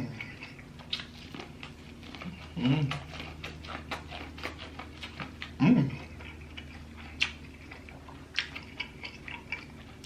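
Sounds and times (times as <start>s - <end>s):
mouth smacking while chewing: 0.0s - 10.0s
person humming: 2.2s - 3.0s.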